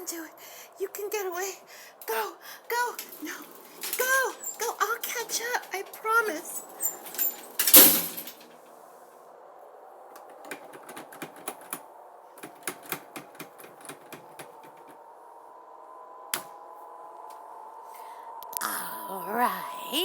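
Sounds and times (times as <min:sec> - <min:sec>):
faint steady hum: 0:00.0 - 0:20.0
light clicks and taps: 0:12.4 - 0:15.0.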